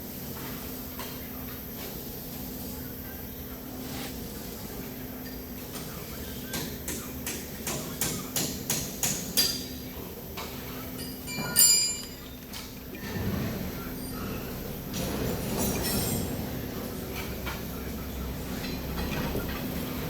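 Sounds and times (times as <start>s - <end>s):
tool tapping on metal: 6.5s - 9.7s
metallic clink ringing: 11.0s - 12.4s.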